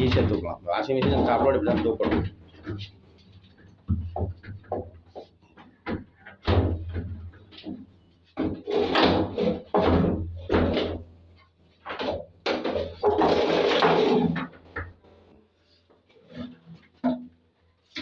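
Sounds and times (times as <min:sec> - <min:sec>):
washing machine cabinet knocking: 0:00.0 - 0:02.4.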